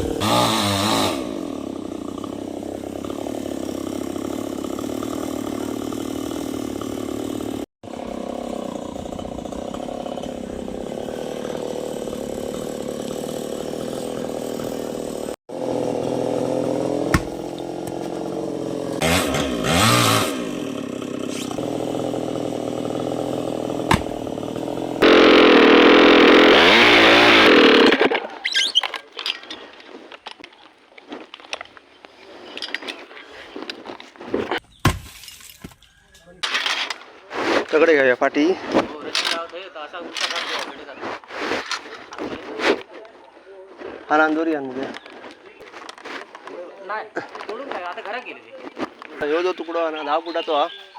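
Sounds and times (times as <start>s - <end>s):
chainsaw revving and cutting: 0.0s - 28.4s.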